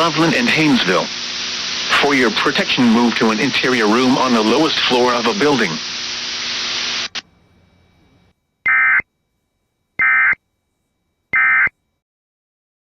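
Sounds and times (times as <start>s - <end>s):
buzzing digital data tones: 6.4s - 10.4s, 11.3s - 12.0s.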